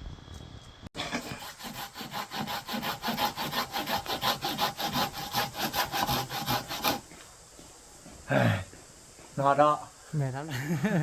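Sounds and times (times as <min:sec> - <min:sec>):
hand saw cutting stem: 0:01.0 - 0:07.0.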